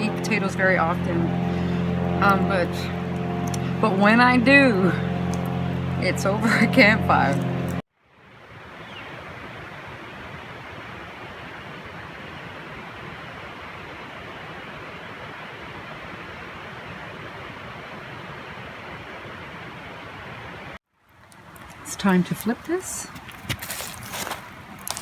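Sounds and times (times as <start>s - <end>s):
steady rushing noise: 0.0s - 7.8s.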